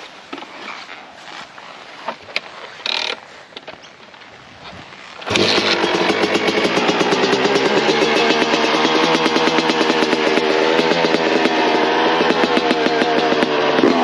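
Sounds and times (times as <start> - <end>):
dirt bike engine kick-started: 5.1 - 14.0.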